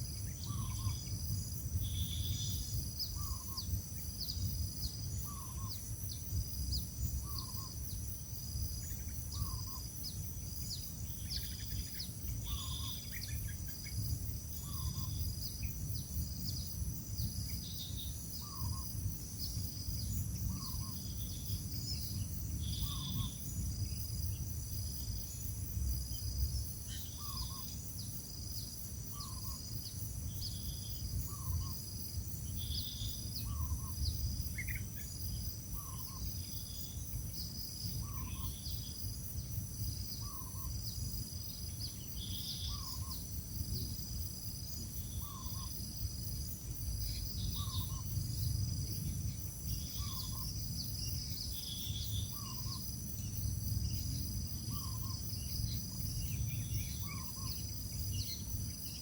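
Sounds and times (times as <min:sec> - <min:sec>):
bird chirps: 0:00.2 - 0:01.2, 0:01.8 - 0:06.2, 0:08.8 - 0:14.0, 0:19.4 - 0:23.4, 0:26.9 - 0:27.8, 0:32.5 - 0:35.1, 0:41.8 - 0:43.2, 0:47.1 - 0:48.1, 0:49.7 - 0:50.5, 0:51.1 - 0:52.8, 0:54.7 - 0:59.0.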